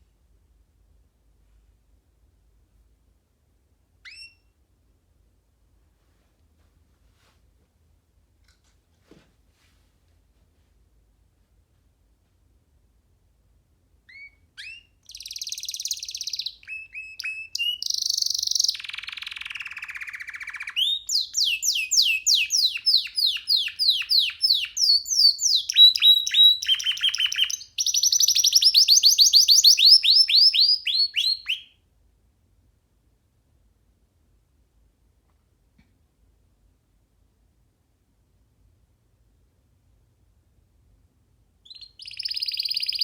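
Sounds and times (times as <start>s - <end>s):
canary singing trills: 4.0s - 4.5s, 14.1s - 31.8s, 41.6s - 43.0s.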